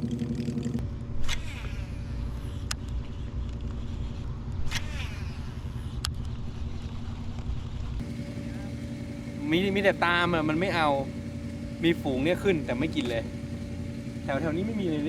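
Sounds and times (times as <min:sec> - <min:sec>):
low rumble: 0:00.0 - 0:14.8
reel whirring: 0:00.0 - 0:15.0
fishing rod swish: 0:01.2 - 0:06.6.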